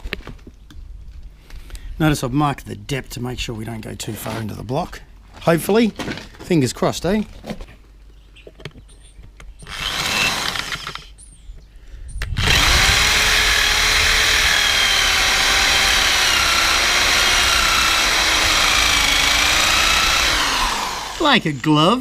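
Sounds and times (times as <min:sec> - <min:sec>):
electric drill whine: 0:09.6 - 0:11.2, 0:12.3 - 0:21.9.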